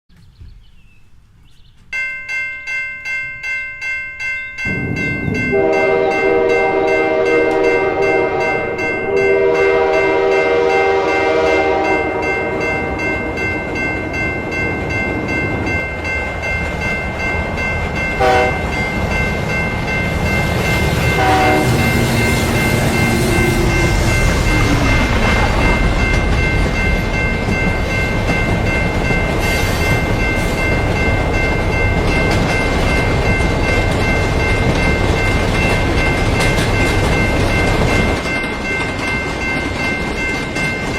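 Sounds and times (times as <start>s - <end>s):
railroad crossing bell ringing: 1.8s - 40.9s
train rumbling: 4.5s - 40.9s
train horn: 5.4s - 13.2s, 18.2s - 18.8s, 21.1s - 26.1s.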